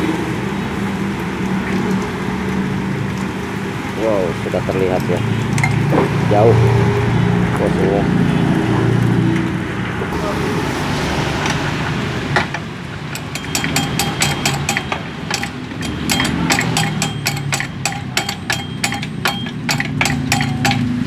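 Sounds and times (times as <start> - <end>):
metallic clicks and taps of hand tools: 12.4 - 21.0.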